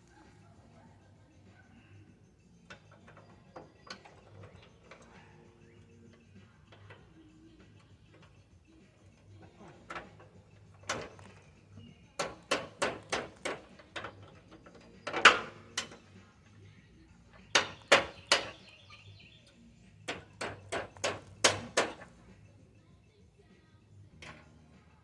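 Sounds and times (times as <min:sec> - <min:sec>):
hand tool striking metal: 0:12.2 - 0:16.0, 0:17.5 - 0:18.7, 0:20.1 - 0:22.1.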